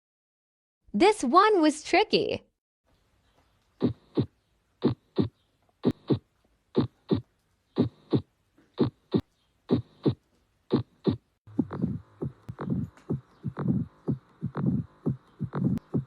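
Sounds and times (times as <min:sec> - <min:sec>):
heartbeat lub-dub: 0:03.8 - 0:06.2, 0:06.8 - 0:16.0.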